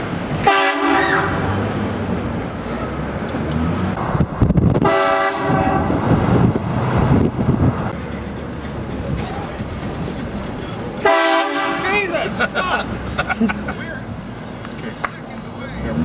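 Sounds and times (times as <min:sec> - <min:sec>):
steady road noise: 0:00.0 - 0:16.0
train horn blasts: 0:00.4 - 0:01.5, 0:04.8 - 0:06.0, 0:11.0 - 0:11.9.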